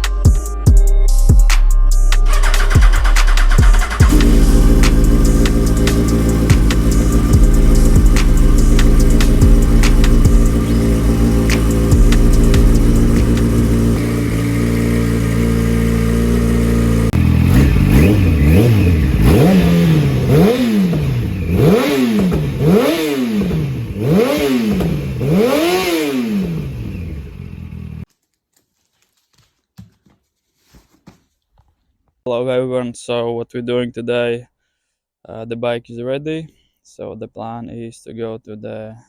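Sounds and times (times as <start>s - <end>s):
motorcycle engine idling and revving: 2.3s - 28.1s.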